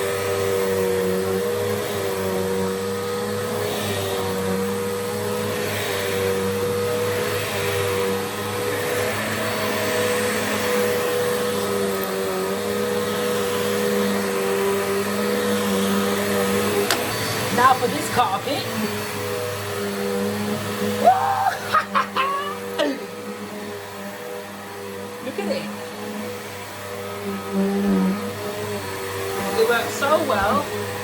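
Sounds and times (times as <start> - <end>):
vacuum cleaner humming: 0.0 - 31.0.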